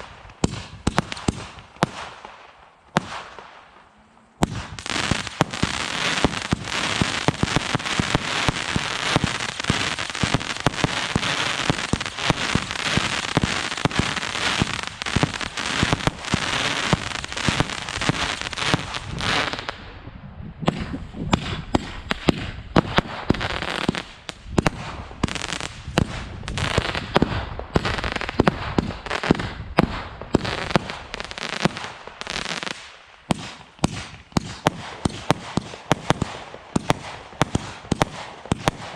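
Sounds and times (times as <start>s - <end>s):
firework barrage crackling and bursting: 0.0s - 3.8s, 4.4s - 38.9s.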